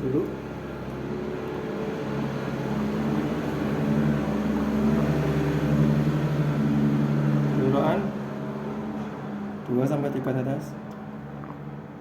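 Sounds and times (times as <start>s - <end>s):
engine-like hum: 0.0s - 12.0s.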